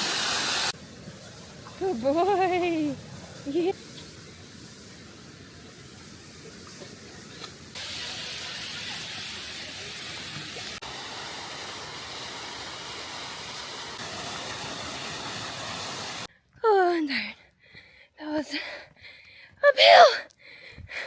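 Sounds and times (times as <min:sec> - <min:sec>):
waterfall rushing: 0:00.0 - 0:03.7, 0:07.8 - 0:16.3.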